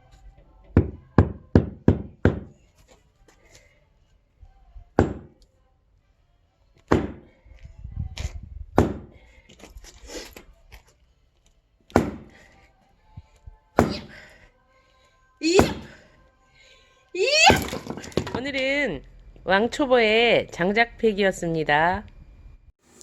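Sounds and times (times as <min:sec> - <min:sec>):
axe splitting firewood: 0:05.0 - 0:05.4, 0:06.9 - 0:07.3, 0:08.8 - 0:10.4, 0:11.9 - 0:12.6, 0:13.8 - 0:14.2, 0:15.4 - 0:16.0, 0:17.2 - 0:18.8.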